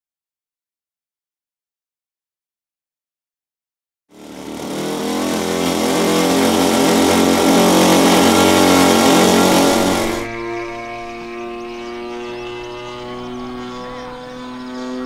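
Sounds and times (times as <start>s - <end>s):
model plane engines droning: 4.1s - 15.0s.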